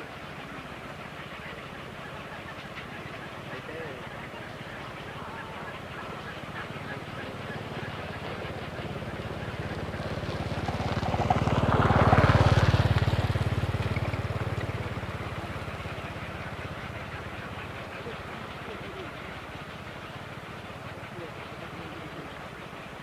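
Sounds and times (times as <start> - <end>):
vehicle engine passing by: 5.4 - 22.8.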